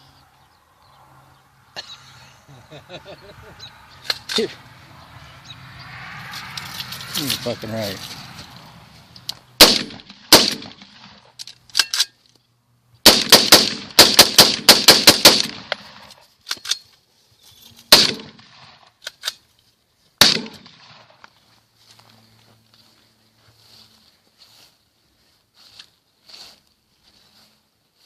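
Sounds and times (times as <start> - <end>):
pistol gunshots: 9.6 - 11.2, 13.0 - 15.8, 17.9 - 18.7, 20.2 - 21.0.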